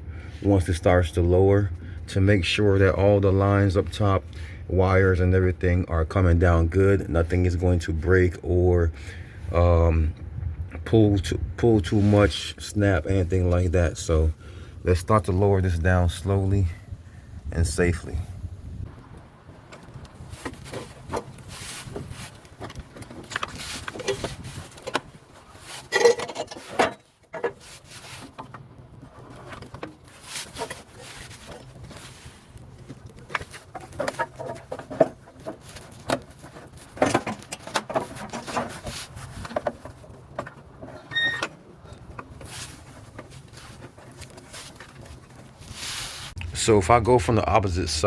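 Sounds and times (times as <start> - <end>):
fuel tank knocking and scraping: 18.8 - 45.8
short squeak: 41.0 - 41.6.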